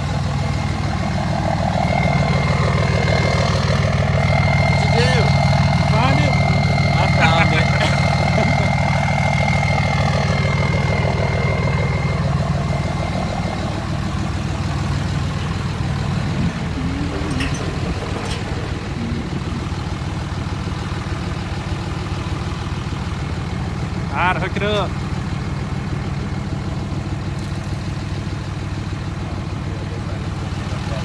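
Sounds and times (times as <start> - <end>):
diesel truck engine idling: 0.0 - 31.0
thin high whine: 15.3 - 20.4.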